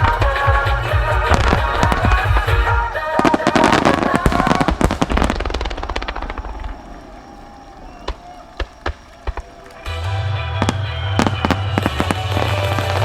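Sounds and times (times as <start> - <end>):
show music with steady beat: 0.0 - 5.0
fireworks bangs and crackles: 0.0 - 13.0.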